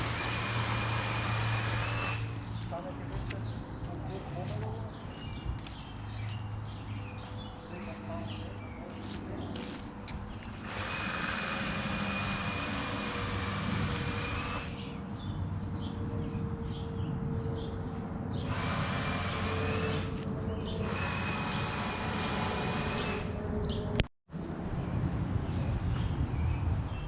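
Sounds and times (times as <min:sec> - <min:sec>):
machine motor running: 0:00.0 - 0:02.4, 0:10.5 - 0:14.9, 0:18.4 - 0:23.5.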